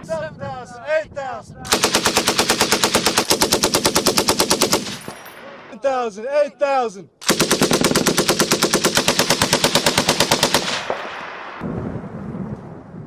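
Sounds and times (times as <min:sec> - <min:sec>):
machine gun automatic burst: 0:01.7 - 0:05.2, 0:07.2 - 0:11.3
rolling gunfire echo: 0:01.7 - 0:05.7, 0:07.2 - 0:12.2.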